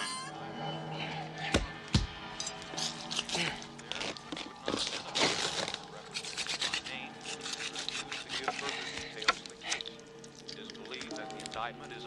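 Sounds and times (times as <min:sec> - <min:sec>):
harsh rasping and scraping: 0:02.7 - 0:09.8.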